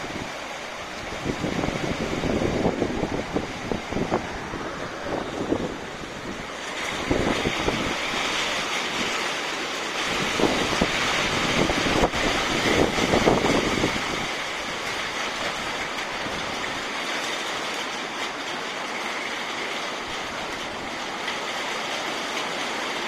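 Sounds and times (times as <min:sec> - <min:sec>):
wind buffeting microphone: 0:00.0 - 0:17.0
tornado winds rushing: 0:00.0 - 0:23.0.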